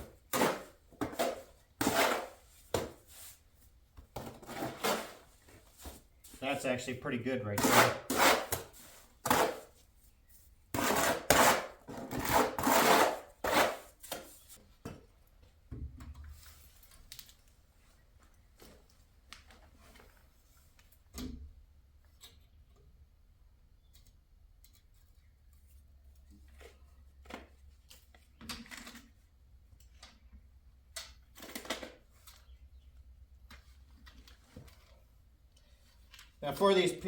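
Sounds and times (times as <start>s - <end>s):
tool scraping through mortar: 0.3s - 3.3s, 4.3s - 5.3s, 7.4s - 9.8s, 10.7s - 14.3s.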